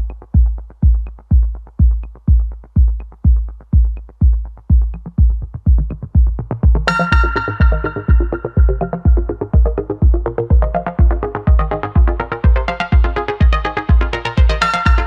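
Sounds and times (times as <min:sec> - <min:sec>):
electronic dance music: 0:00.0 - 0:15.0
faint high chime: 0:06.9 - 0:09.0.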